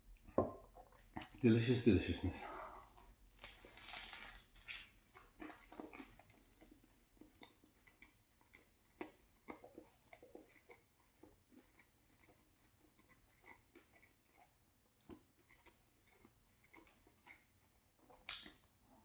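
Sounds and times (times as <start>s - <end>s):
person chewing sandwich: 0.1s - 19.0s.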